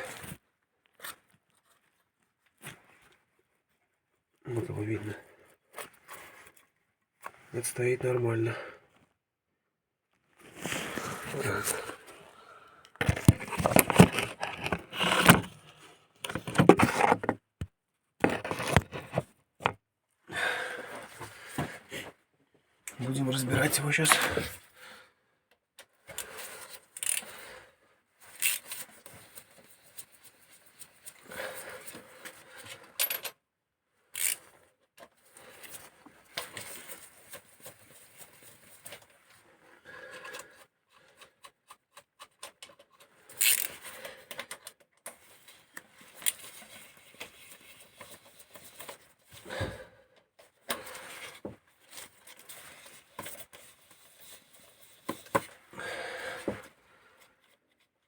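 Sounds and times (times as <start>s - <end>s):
hand tools and metal parts clinking: 27.0s - 27.2s, 34.2s - 34.4s, 43.3s - 43.8s.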